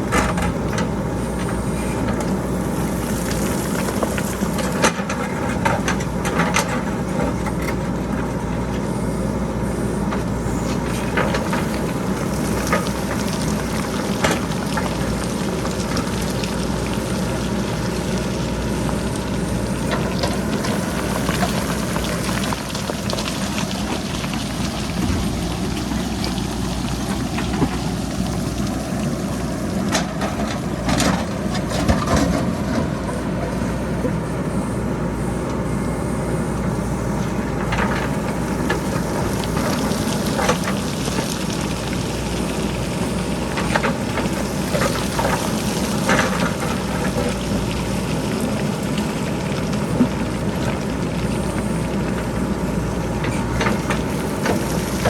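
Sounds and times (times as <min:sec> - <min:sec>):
diesel engine running: 0:00.0 - 0:55.0.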